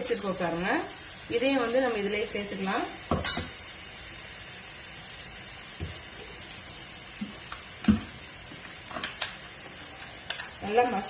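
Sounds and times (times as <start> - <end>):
curry sizzling in a pan: 0.0 - 11.0.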